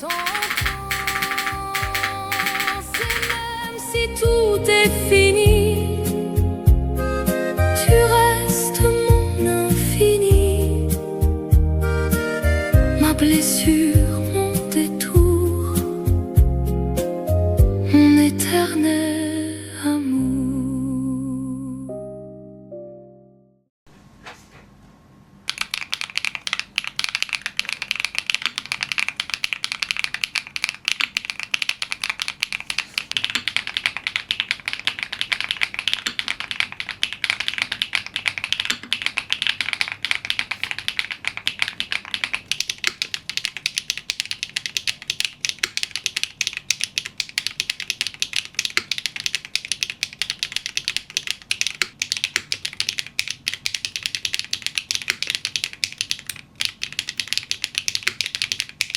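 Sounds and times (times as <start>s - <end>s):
mechanical keyboard typing: 0.0s - 3.8s, 25.5s - 58.9s.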